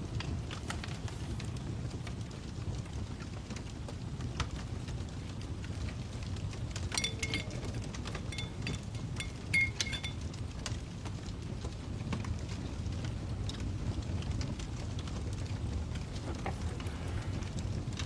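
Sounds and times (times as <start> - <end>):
fire crackling: 0.0 - 18.0
glass clinking: 6.9 - 10.2.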